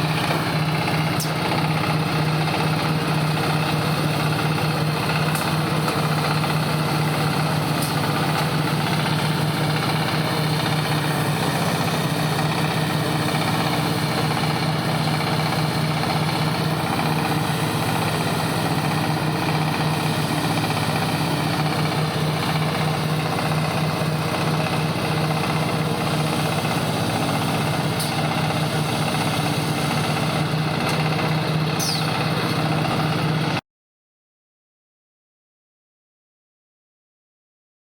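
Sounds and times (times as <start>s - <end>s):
baler machine humming: 0.0s - 33.6s
short falling squeak: 31.8s - 32.1s.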